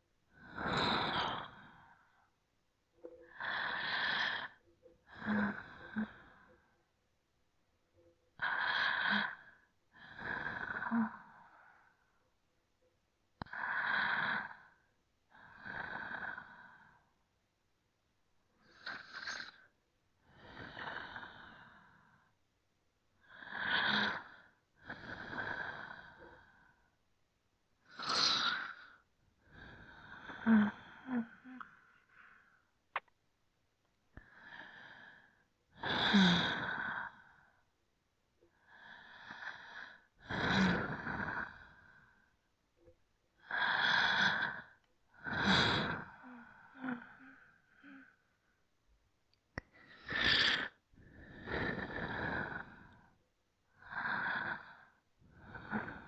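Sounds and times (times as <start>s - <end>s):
person breathing deeply: 53.7s - 56.0s.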